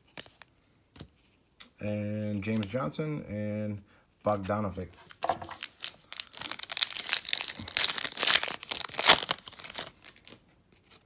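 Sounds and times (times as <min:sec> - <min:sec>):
foil wrapper crinkling and tearing: 0:05.5 - 0:10.4.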